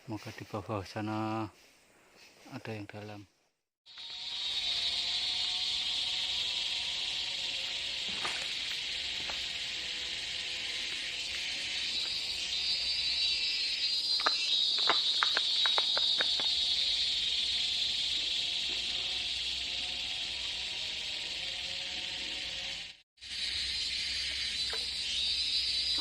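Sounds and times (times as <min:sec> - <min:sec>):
insects droning: 0:03.9 - 0:26.0
sharp snaps: 0:14.2 - 0:16.7.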